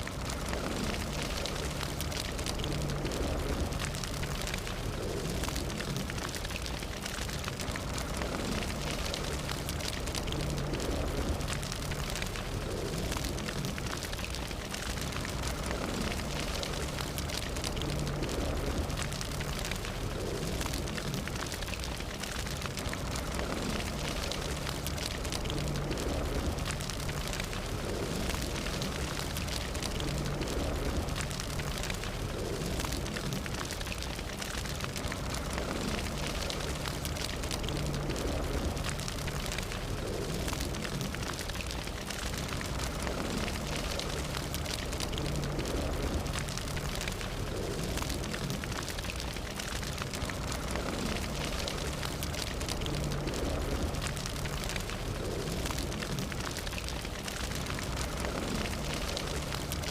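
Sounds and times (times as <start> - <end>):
fire crackling and popping: 0.0 - 59.9
fire low rumble: 0.0 - 59.9.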